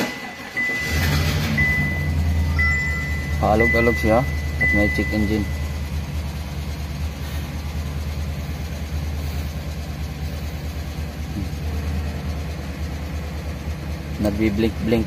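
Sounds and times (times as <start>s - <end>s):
engine idling roughly: 0.0s - 15.0s.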